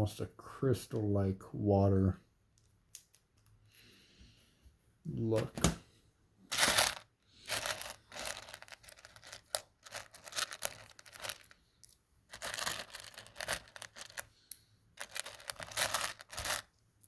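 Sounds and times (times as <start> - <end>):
plastic bricks clicking and rustling: 6.5 - 11.6, 12.3 - 14.3, 15.0 - 16.7.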